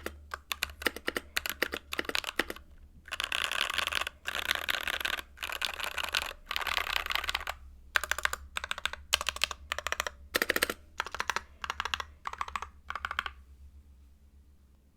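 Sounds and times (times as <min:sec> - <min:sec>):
mechanical keyboard typing: 0:00.0 - 0:13.4.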